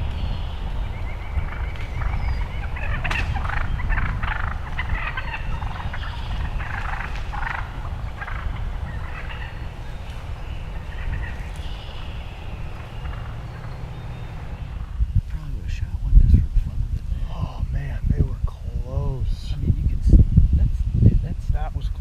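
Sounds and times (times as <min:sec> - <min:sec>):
turkeys gobbling calls: 0:00.0 - 0:15.0
steady low rumble: 0:00.0 - 0:22.0.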